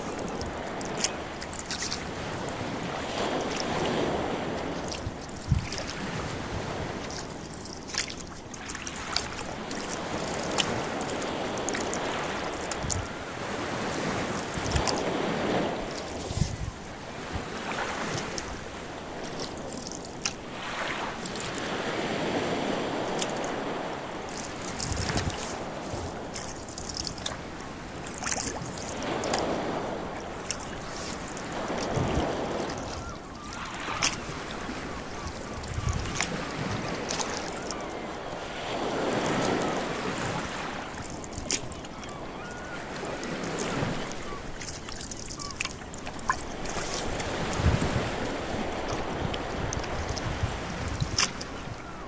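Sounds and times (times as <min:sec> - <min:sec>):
water splashes and clicks: 0:00.0 - 0:02.1, 0:04.6 - 0:06.0, 0:06.9 - 0:13.1, 0:14.3 - 0:17.0, 0:19.2 - 0:20.4, 0:21.2 - 0:21.7, 0:23.1 - 0:23.6, 0:24.3 - 0:29.6, 0:30.4 - 0:34.3, 0:35.6 - 0:37.8, 0:40.3 - 0:42.1, 0:43.5 - 0:48.0, 0:48.8 - 0:51.6
sea waves lapping: 0:00.0 - 0:52.0.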